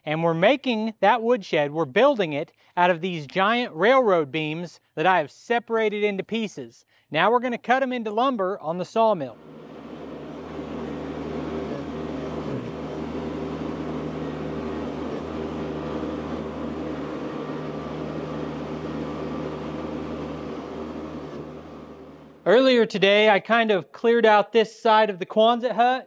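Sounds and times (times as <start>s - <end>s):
engine running steadily: 9.3s - 22.4s.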